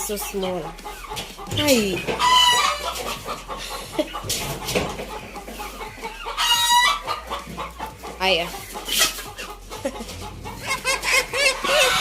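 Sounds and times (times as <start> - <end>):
chickens clucking and calling: 0.0 - 12.0.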